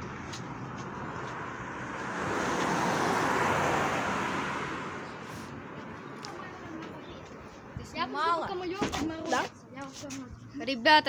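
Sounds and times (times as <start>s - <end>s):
car passing by: 0.0s - 6.4s.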